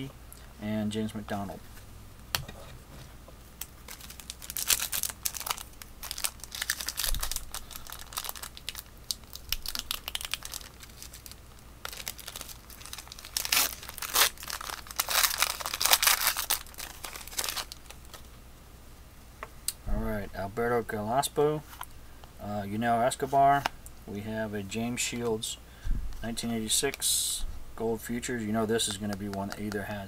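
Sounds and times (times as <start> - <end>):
foil wrapper tearing and crinkling: 3.6 - 18.2
cards shuffling: 28.9 - 29.9.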